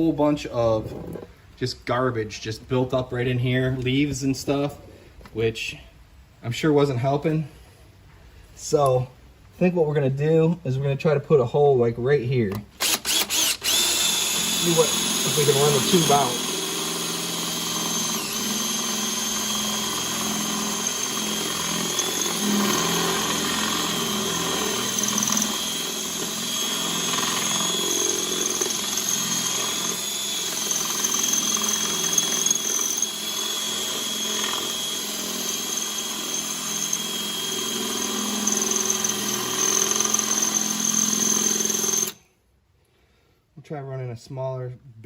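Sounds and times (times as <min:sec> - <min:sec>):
electric drill whining: 0:12.8 - 0:42.3.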